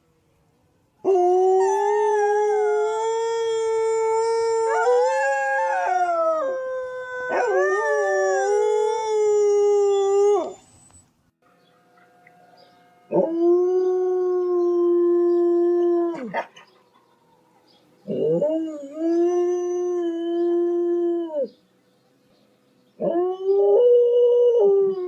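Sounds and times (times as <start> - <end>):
dog howling: 1.1 - 10.6.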